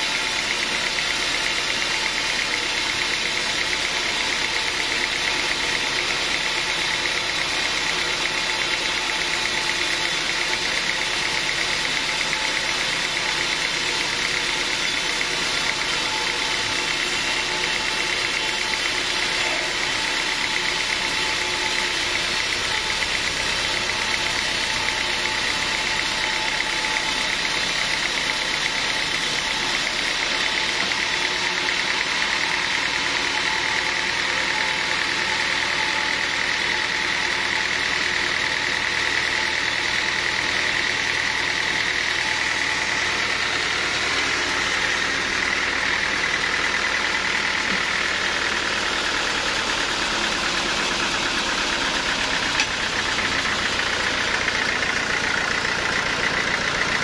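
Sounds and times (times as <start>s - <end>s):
sawmill machinery drone: 0.0s - 57.0s.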